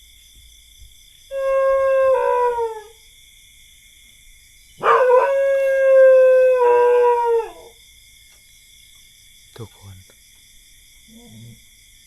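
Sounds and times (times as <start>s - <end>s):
dog howling: 1.3s - 3.0s, 4.8s - 7.8s.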